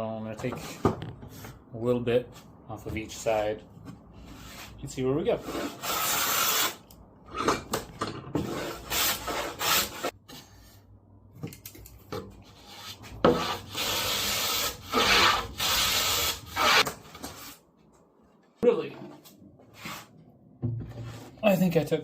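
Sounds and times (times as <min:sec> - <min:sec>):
hand tool rubbing plywood: 0:12.6 - 0:16.8.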